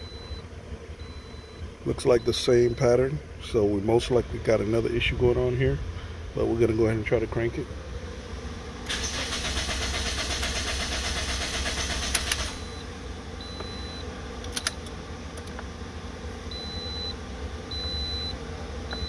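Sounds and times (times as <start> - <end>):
engine cranking on starter: 8.9 - 12.8
clicks: 14.4 - 15.7.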